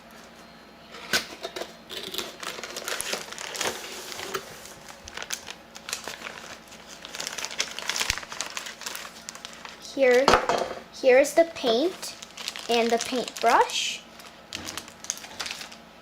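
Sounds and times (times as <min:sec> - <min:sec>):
plastic packaging crinkling: 0:01.9 - 0:10.3, 0:11.6 - 0:16.0.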